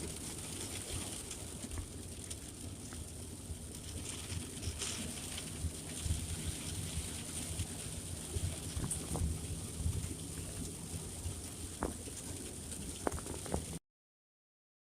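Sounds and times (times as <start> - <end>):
light rain pattering on a car: 0.0 - 13.8
low rumble of car on road: 0.0 - 13.8.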